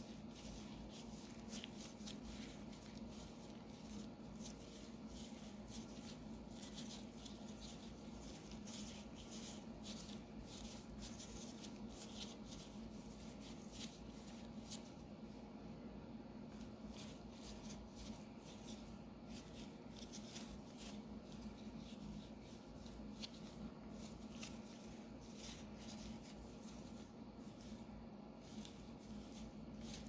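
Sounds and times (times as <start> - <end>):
fingers scratching and tapping dough: 0.0 - 15.0
steady low hum: 0.0 - 30.0.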